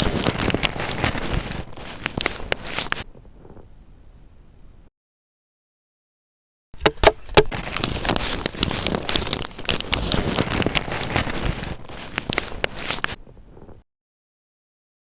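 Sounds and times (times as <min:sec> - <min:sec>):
dense crackling with snaps: 0:00.0 - 0:03.7, 0:06.8 - 0:13.8.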